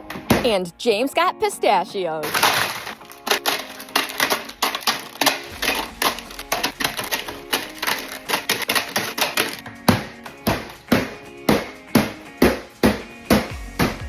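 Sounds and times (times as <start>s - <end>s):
faint background music: 0.0s - 14.0s
containers clicking into fridge: 2.3s - 10.7s.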